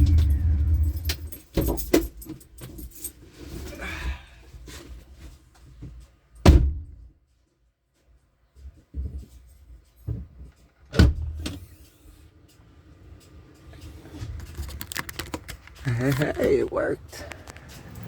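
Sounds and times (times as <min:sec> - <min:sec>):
car door thumps: 0:06.4 - 0:07.0
soft handling noises: 0:13.6 - 0:17.8.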